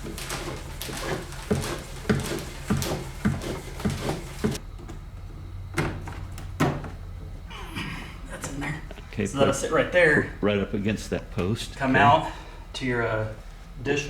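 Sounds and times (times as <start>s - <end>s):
tubing knocking on wood: 0.0s - 4.6s
tubing scraping through wood: 0.0s - 4.6s.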